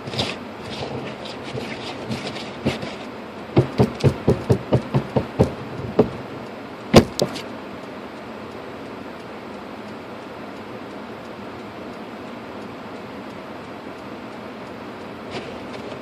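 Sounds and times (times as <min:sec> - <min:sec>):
wiper blade knocking on glass: 0:03.6 - 0:06.2.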